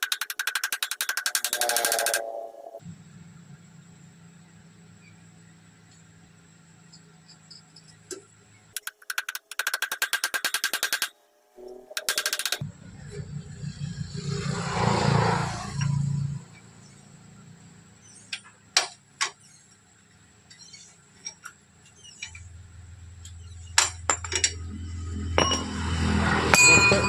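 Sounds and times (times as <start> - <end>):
low rumbling hum: 12.6 - 18.0, 21.9 - 27.0
sharp metallic clinks: 23.2 - 27.0.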